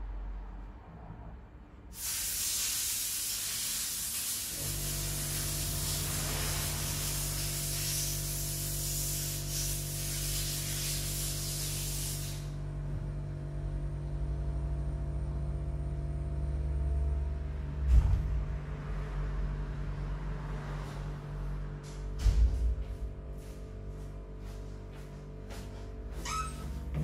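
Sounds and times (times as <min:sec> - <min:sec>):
low hum with tones: 0:12.5 - 0:27.0.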